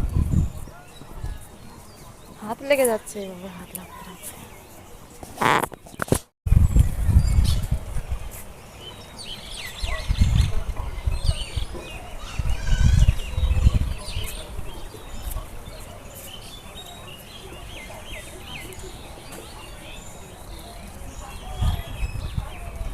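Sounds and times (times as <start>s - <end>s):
low rumbling on microphone: 0.0s - 1.8s, 6.5s - 8.4s, 9.8s - 15.7s, 21.0s - 22.9s
small birds chirping: 0.0s - 22.9s.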